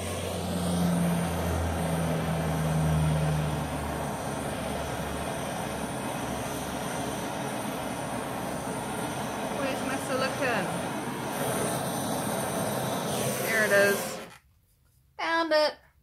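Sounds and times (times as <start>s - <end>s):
heat gun blowing air: 0.0s - 14.4s.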